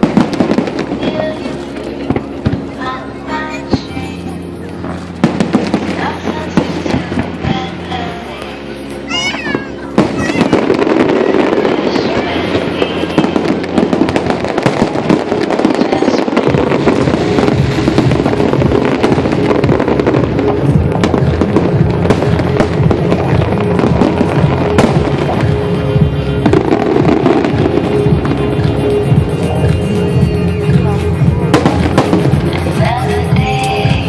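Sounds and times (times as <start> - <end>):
firework bursts and crackling: 0.0 - 34.0
firework bang: 9.4 - 33.1.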